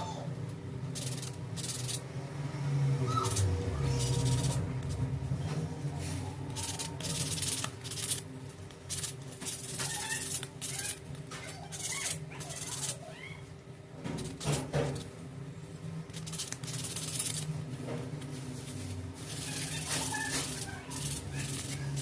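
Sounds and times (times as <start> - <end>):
sandpaper rubbing on wood: 19.2 - 22.0.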